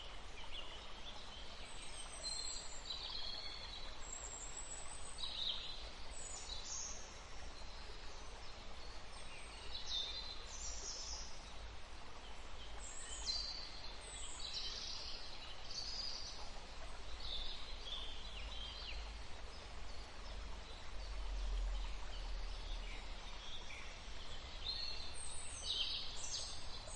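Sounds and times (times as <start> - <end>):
stream flowing: 0.0 - 26.9.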